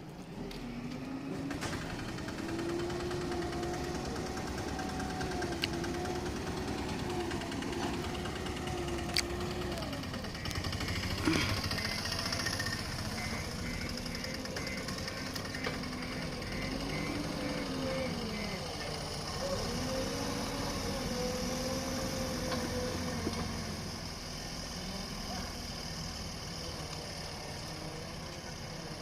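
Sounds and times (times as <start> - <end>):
diesel engines running: 0.0 - 29.0.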